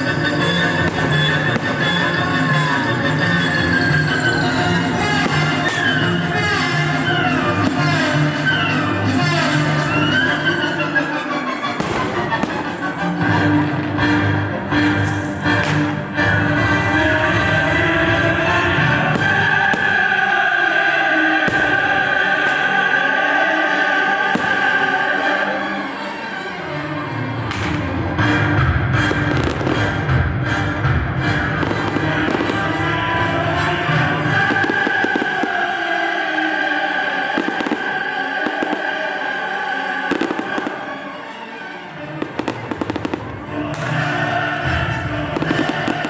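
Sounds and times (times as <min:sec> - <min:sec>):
firework bangs: 0:00.0 - 0:02.1, 0:05.1 - 0:06.1, 0:11.7 - 0:13.0, 0:19.0 - 0:20.3, 0:21.3 - 0:22.8, 0:24.2 - 0:25.2, 0:27.5 - 0:30.4, 0:31.4 - 0:33.1, 0:34.2 - 0:36.0, 0:37.2 - 0:39.2, 0:40.1 - 0:41.0, 0:42.2 - 0:46.0
operatic choral music with orchestra: 0:00.0 - 0:46.0.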